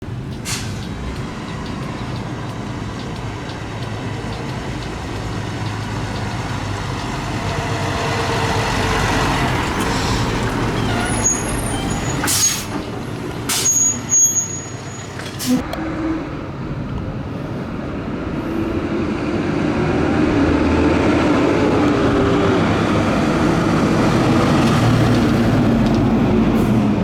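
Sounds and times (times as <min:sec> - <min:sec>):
fire engine diesel running: 0:00.0 - 0:27.0
air brakes hissing: 0:00.3 - 0:01.0, 0:09.7 - 0:15.6.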